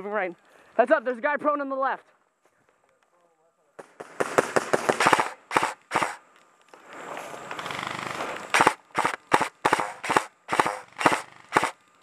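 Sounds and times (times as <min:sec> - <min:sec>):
airsoft gun shots: 0:03.8 - 0:06.2, 0:07.7 - 0:11.8.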